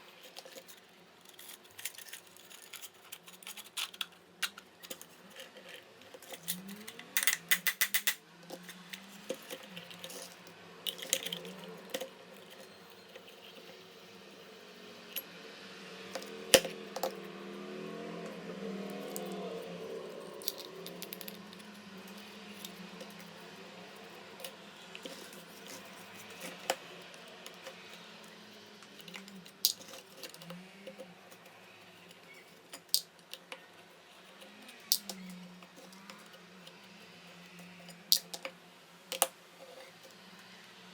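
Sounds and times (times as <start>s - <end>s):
small metal parts clicking: 0.1s - 13.8s, 20.1s - 38.5s.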